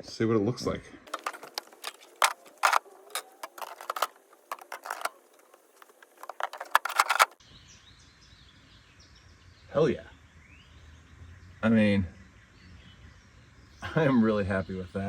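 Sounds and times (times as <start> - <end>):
plastic drawers clattering and clicking: 1.1 - 7.4.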